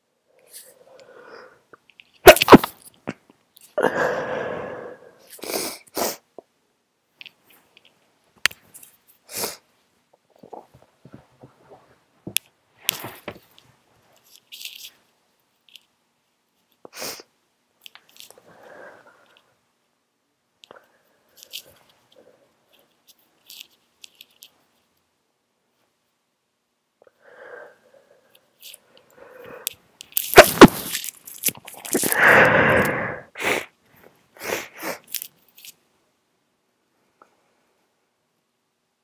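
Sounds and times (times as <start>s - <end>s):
noisy breath out: 0.4s - 1.7s, 3.8s - 6.2s, 27.0s - 29.8s, 32.0s - 33.7s
person sneezing: 2.2s - 2.7s, 30.3s - 31.0s, 31.9s - 33.7s
person sniffing: 2.2s - 2.7s, 3.8s - 6.3s, 9.3s - 9.6s, 16.9s - 17.3s, 30.3s - 31.0s, 31.9s - 33.8s, 34.4s - 35.2s.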